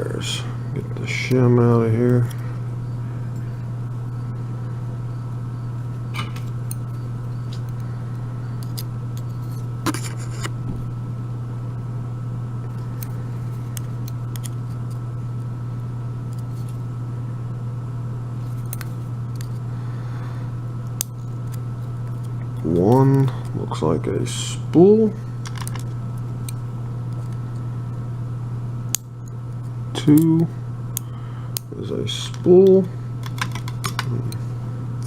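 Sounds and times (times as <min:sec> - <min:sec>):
steady low hum: 0:00.0 - 0:35.0.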